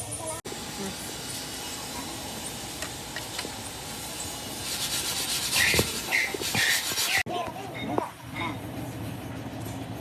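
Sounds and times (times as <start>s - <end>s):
rubbing and scraping strokes: 4.6s - 7.3s.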